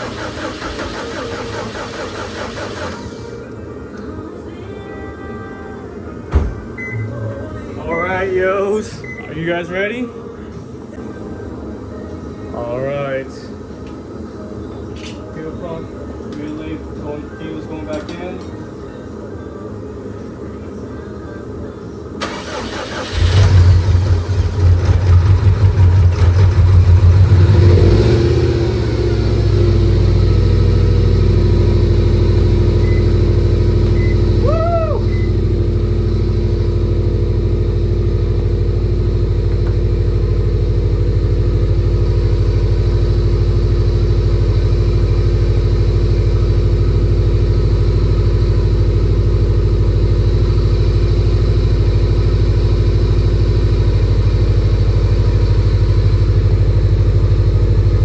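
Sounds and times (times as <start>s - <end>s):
car engine cranking: 0.0s - 3.4s, 22.2s - 49.7s
car engine idling: 0.0s - 3.6s, 22.2s - 58.0s.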